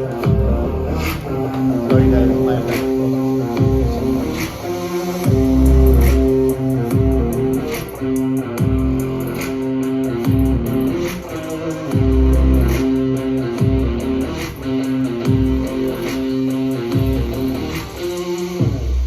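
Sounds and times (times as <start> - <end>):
guitar music with bass: 0.0 - 19.0.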